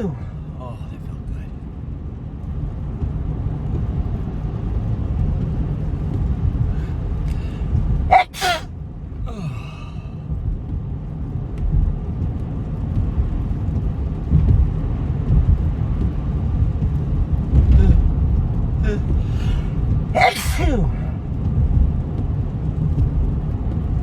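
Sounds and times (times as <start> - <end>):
person sneezing: 7.3 - 8.7, 9.3 - 10.1, 18.8 - 21.2.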